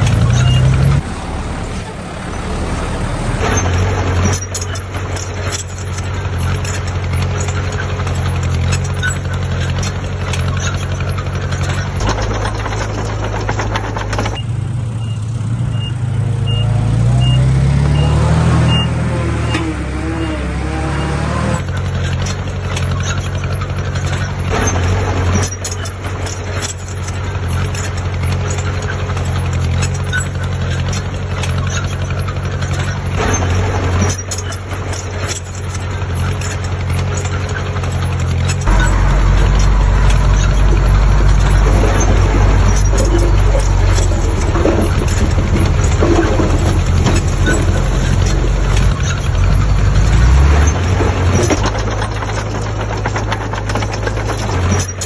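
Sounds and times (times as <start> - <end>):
engine revving: 0.0 - 30.0, 30.8 - 37.4, 38.1 - 55.0
heavy diesel engine droning: 0.0 - 55.0
machinery clanks and knocks: 0.0 - 55.0
reversing alarm beeping: 0.1 - 1.2, 14.4 - 21.5, 38.7 - 44.7.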